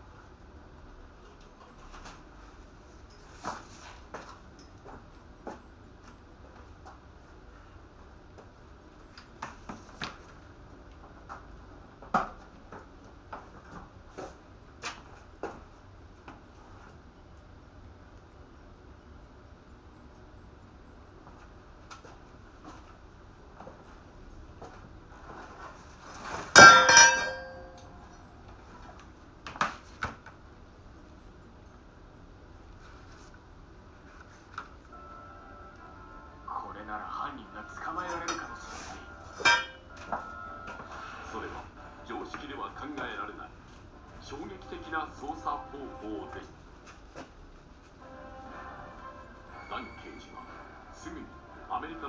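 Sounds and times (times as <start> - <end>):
ringing clinks: 26.6 - 27.8.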